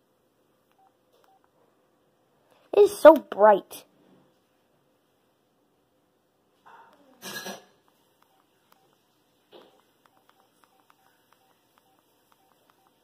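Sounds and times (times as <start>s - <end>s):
phone electronic beeps: 8.2s - 9.0s, 9.8s - 13.0s.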